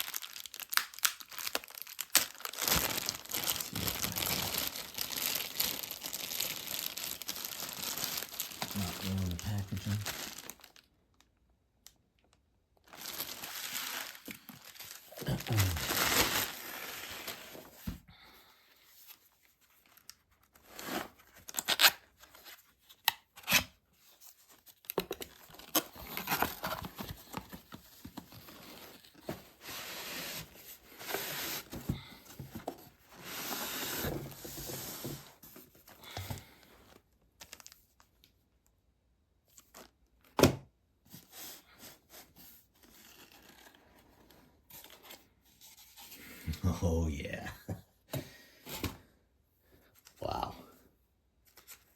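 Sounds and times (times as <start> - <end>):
packaging tearing and crinkling: 0.0 - 10.9, 12.8 - 17.5, 19.8 - 23.7.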